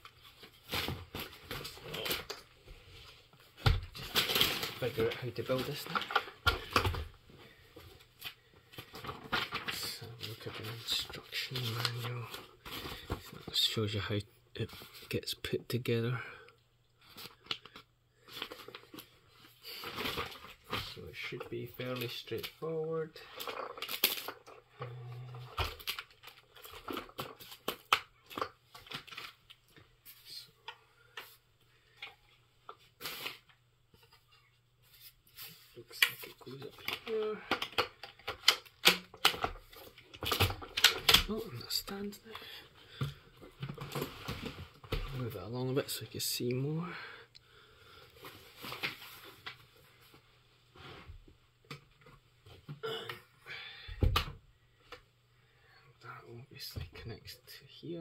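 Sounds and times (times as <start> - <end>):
plastic parts clicking and knocking: 5.5 - 7.2, 23.3 - 29.3, 36.0 - 41.4.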